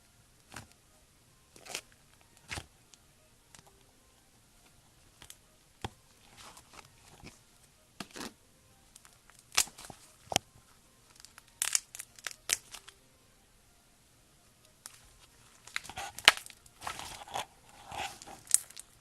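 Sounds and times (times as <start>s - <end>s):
slime popping and crackling: 9.0s - 10.4s, 11.1s - 12.9s, 15.6s - 19.0s.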